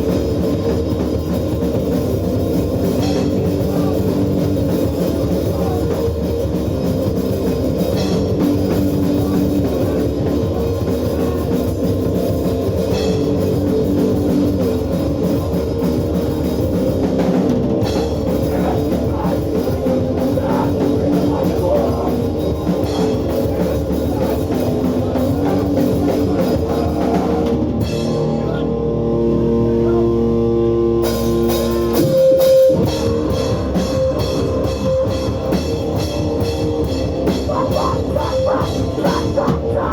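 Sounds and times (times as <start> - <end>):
pounding drums: 0.0 - 28.4
distorted guitars: 0.0 - 39.9
punk band playing live: 0.0 - 39.9.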